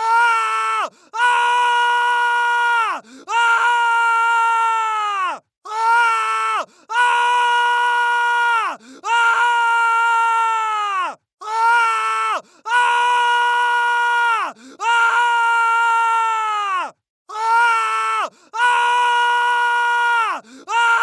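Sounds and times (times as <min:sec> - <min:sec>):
high human scream of pain: 0:00.0 - 0:21.0.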